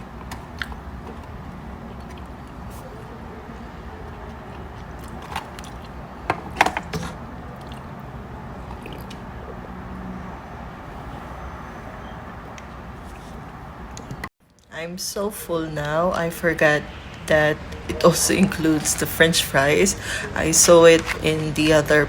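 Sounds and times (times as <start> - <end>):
person chewing food: 0.0 - 9.8, 12.4 - 14.7
low background hum: 0.0 - 22.0.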